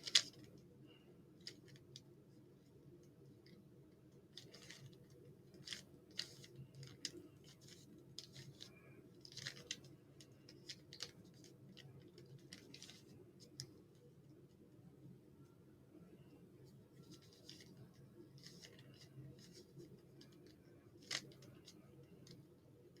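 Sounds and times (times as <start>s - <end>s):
faint room hum: 0.0s - 23.0s
puzzle cube clicking and rattling: 4.3s - 13.1s, 18.4s - 22.4s.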